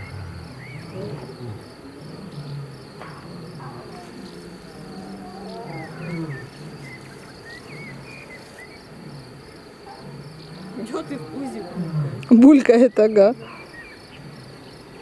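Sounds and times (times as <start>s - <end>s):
low uneven rumble: 0.0s - 12.3s
insects chirping: 0.0s - 15.0s.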